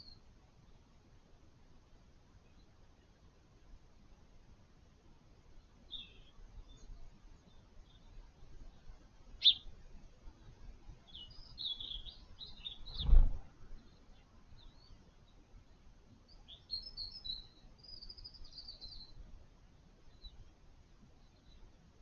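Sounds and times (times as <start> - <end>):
small birds chirping: 0.0 - 0.8, 5.5 - 19.2, 20.0 - 21.8
dull thump: 13.0 - 13.4.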